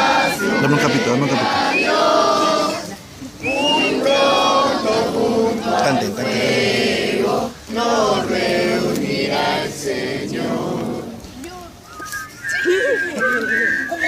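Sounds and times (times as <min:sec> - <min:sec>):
young people chanting in unison: 0:00.0 - 0:11.2.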